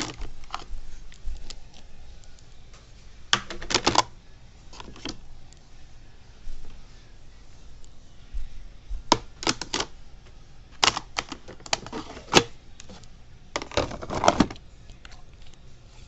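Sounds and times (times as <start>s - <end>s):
hard objects clicking and clattering: 0.0s - 0.7s, 3.4s - 4.1s, 9.1s - 9.9s, 10.8s - 13.0s, 13.6s - 14.6s.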